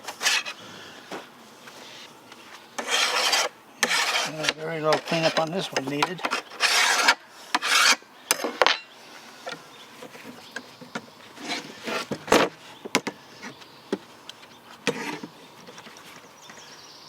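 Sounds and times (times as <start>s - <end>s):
file scraping steel: 0.0s - 0.6s, 2.8s - 8.0s, 11.4s - 12.2s.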